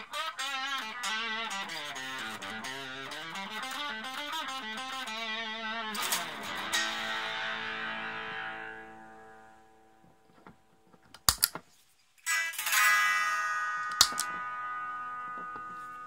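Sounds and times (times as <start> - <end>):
electric guitar chord strummed: 0.0 - 10.3, 12.6 - 16.0
sharp clicks: 10.4 - 11.6, 13.9 - 14.4.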